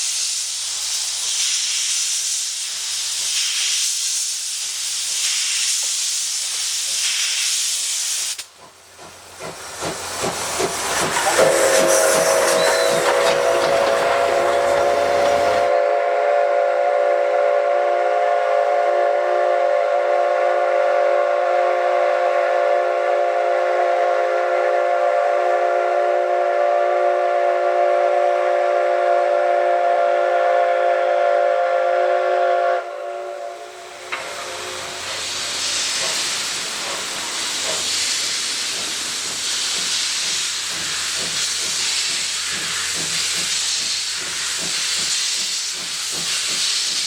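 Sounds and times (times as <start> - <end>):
steam hissing: 0.0 - 16.4, 28.3 - 47.0
steam locomotive whistle: 11.0 - 36.1.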